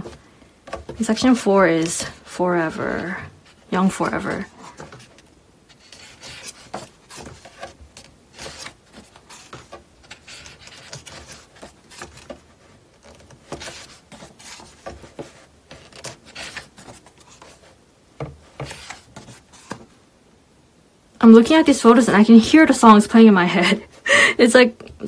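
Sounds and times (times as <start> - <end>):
book pages turning: 0.0 - 19.9.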